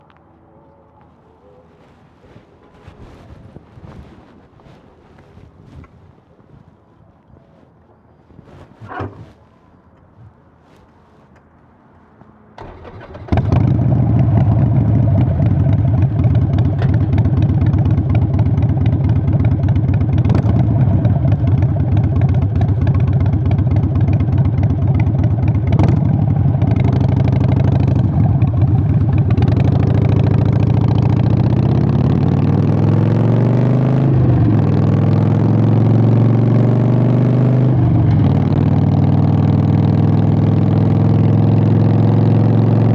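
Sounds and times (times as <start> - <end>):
motorcycle engine cranking and starting: 12.6 - 31.4
motorcycle engine revving: 12.6 - 42.9.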